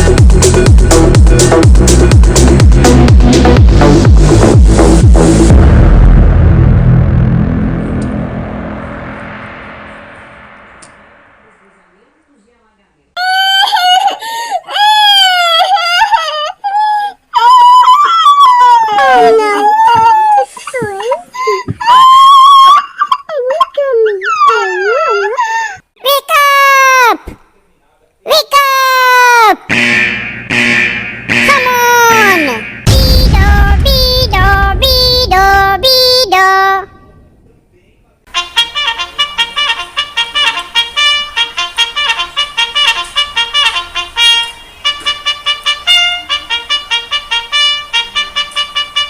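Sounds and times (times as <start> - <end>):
alarm melody of held notes: 29.7 - 33.0
fast alarm tune: 29.7 - 33.8.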